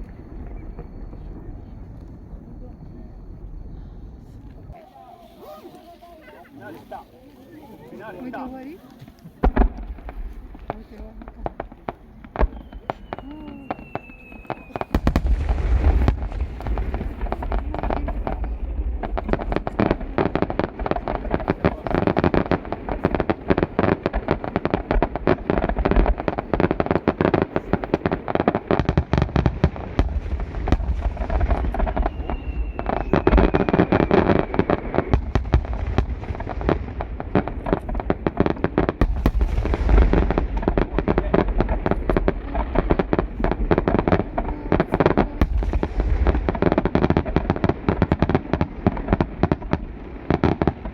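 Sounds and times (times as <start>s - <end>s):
falling firework whistle: 0.0s - 5.8s, 12.3s - 18.7s, 30.0s - 36.4s
fireworks bangs and crackles: 0.0s - 50.9s.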